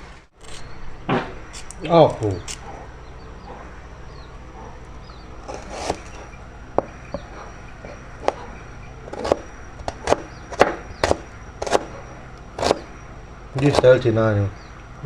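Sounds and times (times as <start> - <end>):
steady low hum: 0.0 - 15.0
faint bird chirps: 0.5 - 15.0.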